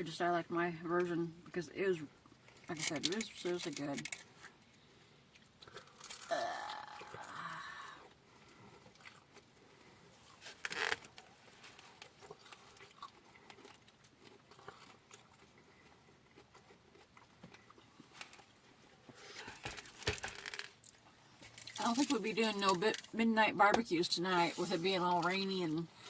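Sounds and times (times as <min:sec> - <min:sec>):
chewing with crunches: 0:02.2 - 0:07.4, 0:08.0 - 0:23.2.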